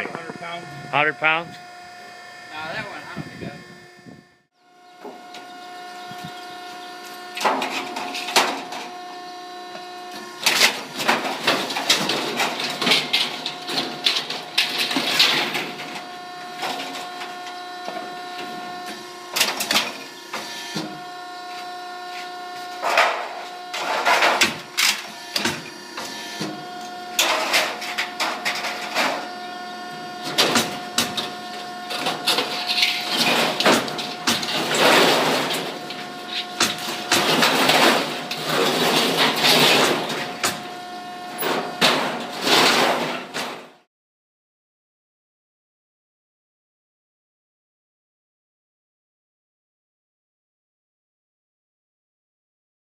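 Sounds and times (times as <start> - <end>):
hydraulic power unit humming: 0.0 - 43.9
scrap metal clanks and crashes: 6.3 - 43.8.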